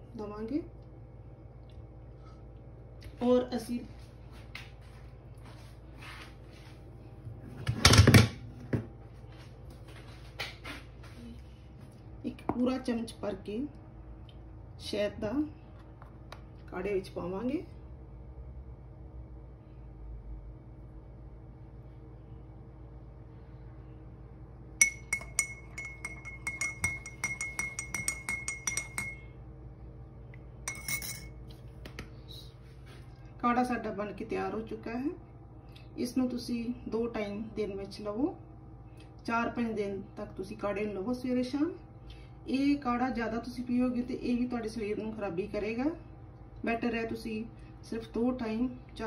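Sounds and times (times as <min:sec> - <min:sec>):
metal spoon clinking in cup: 0:24.8 - 0:29.3, 0:30.7 - 0:31.4.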